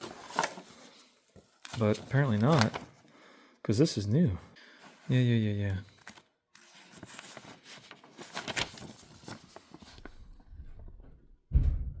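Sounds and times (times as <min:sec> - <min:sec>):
dull thud: 0:11.5 - 0:12.0.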